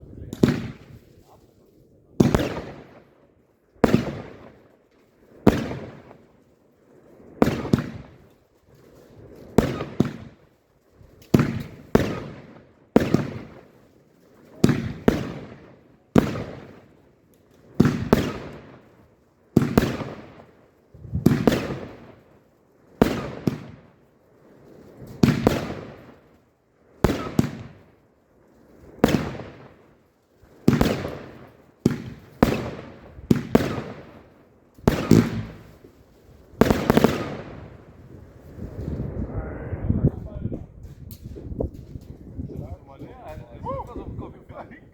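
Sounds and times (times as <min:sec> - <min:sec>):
firework shots banging: 0:00.3 - 0:01.0, 0:02.2 - 0:02.9, 0:11.2 - 0:12.4, 0:13.0 - 0:13.5, 0:27.0 - 0:27.8, 0:30.7 - 0:34.2, 0:34.8 - 0:38.9.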